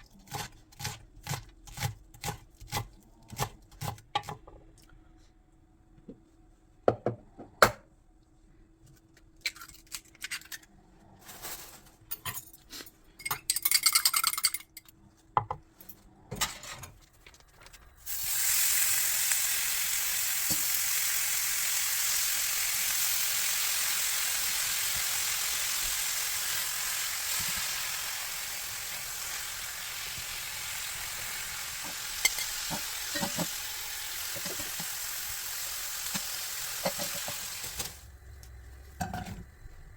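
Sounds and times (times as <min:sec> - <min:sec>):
food sizzling in oiled pan: 0:18.1 - 0:38.0
utensils and dishes clicking: 0:32.2 - 0:33.5.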